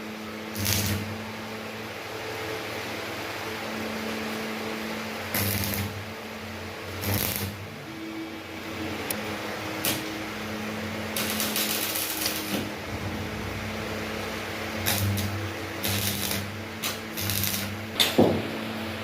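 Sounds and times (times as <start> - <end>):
machinery electrical hum: 0.0 - 19.0
hissing crackling bursts: 5.3 - 6.0, 7.0 - 7.7, 11.1 - 18.0.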